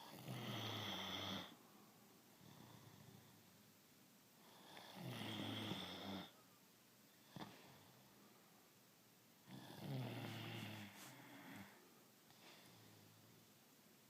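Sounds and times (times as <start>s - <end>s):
pet snoring: 0.0s - 1.6s, 4.5s - 6.3s, 9.5s - 11.8s.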